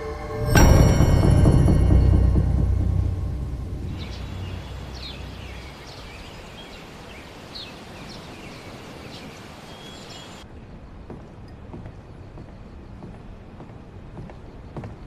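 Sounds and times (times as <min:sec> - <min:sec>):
low rumble: 0:00.0 - 0:06.8
birds chirping: 0:00.0 - 0:15.0
steady outdoor hiss: 0:00.0 - 0:15.0.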